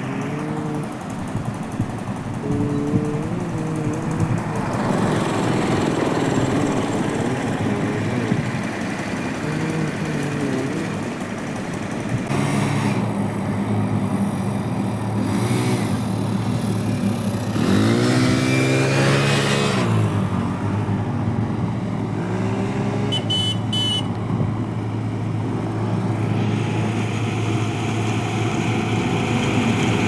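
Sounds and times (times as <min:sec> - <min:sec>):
earthmoving machine engine revving: 0:00.0 - 0:23.4.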